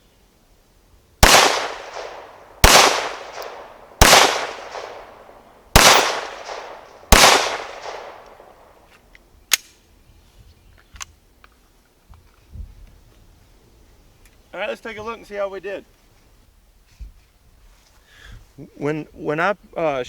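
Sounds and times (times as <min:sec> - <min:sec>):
pistol shots echoing: 0:01.2 - 0:08.7.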